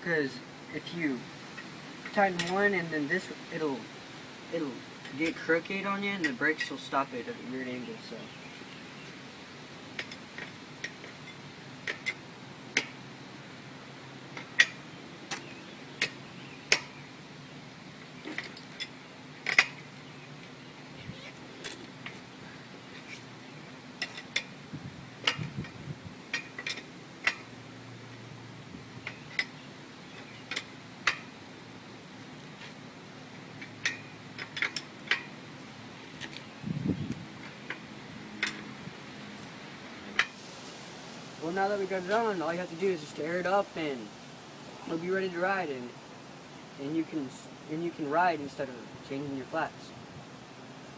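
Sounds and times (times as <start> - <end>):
wrench clicking on axle nuts: 14.4 - 17.0, 18.2 - 19.9, 25.2 - 27.5, 29.0 - 29.6, 33.5 - 35.4
wrench metallic clicks: 18.3 - 19.9, 29.0 - 29.6, 33.6 - 35.3, 38.4 - 38.7.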